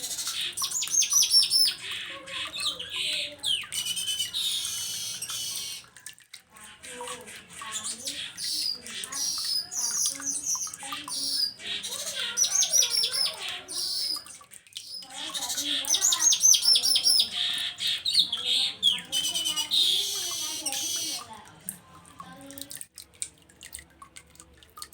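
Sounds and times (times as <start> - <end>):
bird chattering chirps: 0.0 - 5.8, 7.6 - 21.3
fast ticking trills: 7.5 - 21.4.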